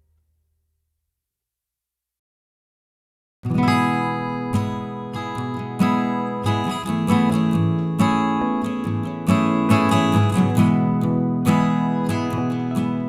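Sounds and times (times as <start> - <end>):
guitar chords strummed: 3.5 - 13.0.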